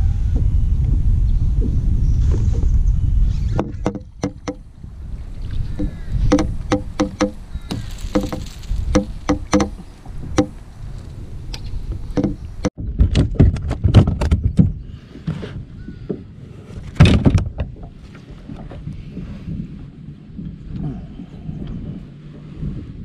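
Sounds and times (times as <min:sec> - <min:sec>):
low rumble: 0:00.0 - 0:12.2
hollow knocks and clicks on kayak: 0:03.5 - 0:04.6, 0:05.5 - 0:10.6, 0:11.5 - 0:19.3.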